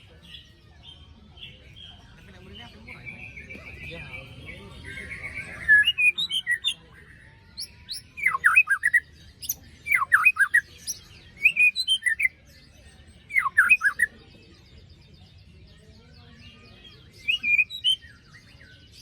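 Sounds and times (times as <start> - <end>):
bird singing whistled notes: 2.0 - 14.1, 16.4 - 19.0.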